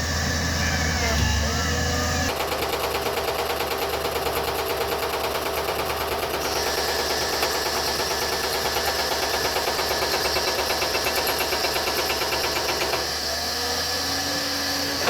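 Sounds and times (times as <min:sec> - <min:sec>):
excavator engine running: 0:00.0 - 0:04.8
hydraulic breaker hammering rock: 0:00.0 - 0:13.8.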